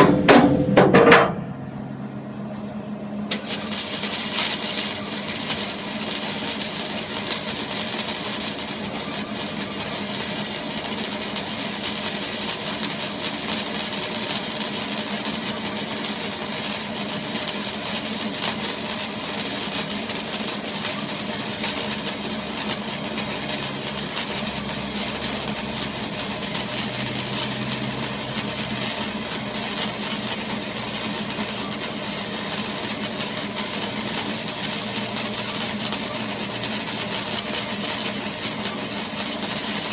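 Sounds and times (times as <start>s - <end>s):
deeper hum: 0.0s - 3.3s
engine humming: 0.0s - 3.5s.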